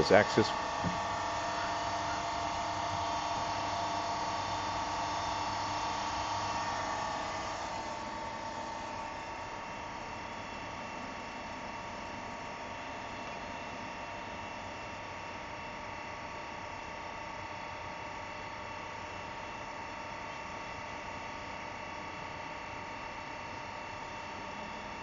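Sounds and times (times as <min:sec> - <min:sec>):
machining center humming: 0:00.0 - 0:10.8.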